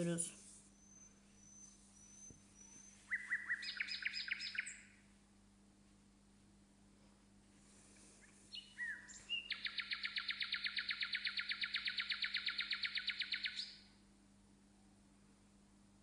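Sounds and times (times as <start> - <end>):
songbird chirping and trilling: 0.8 - 5.1, 8.1 - 13.9.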